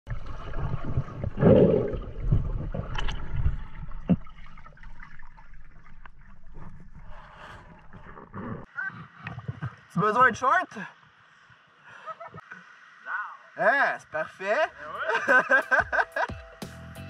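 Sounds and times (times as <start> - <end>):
water sloshing and gurgling: 0.0 - 13.5.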